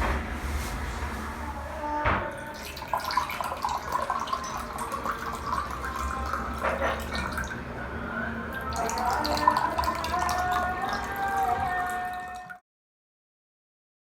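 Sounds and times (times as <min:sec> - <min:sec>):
tap water splashing in sink: 0:02.5 - 0:07.6.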